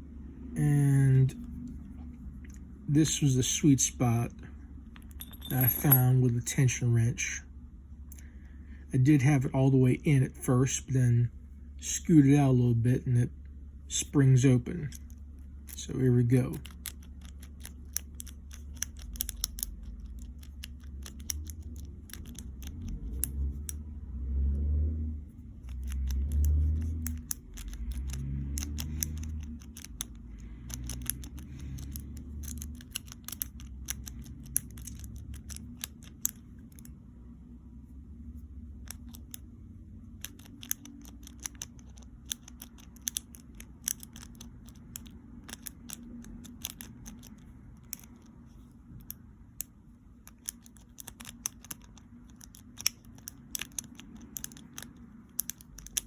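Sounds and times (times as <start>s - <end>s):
low steady hum: 0.0s - 56.0s
lock pick clicking and scraping: 5.0s - 6.1s, 16.6s - 23.8s, 25.6s - 36.9s, 38.8s - 39.5s, 40.2s - 48.4s, 49.0s - 56.0s
dull handling rumbles: 5.1s - 6.4s.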